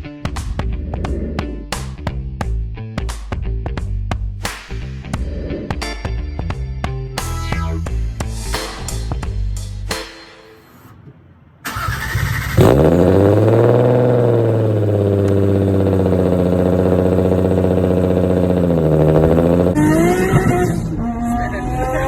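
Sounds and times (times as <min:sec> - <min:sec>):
car engine idling loudly: 0:12.6 - 0:19.8.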